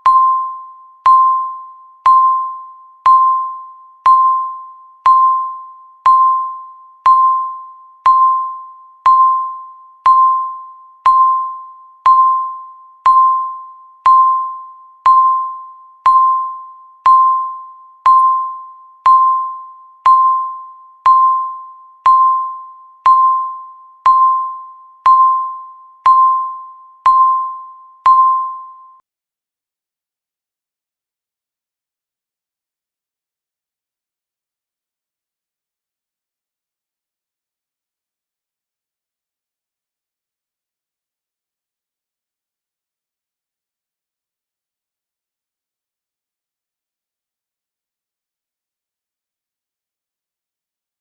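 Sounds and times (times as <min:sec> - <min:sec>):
electronic timer beeps: 0:00.0 - 0:29.0.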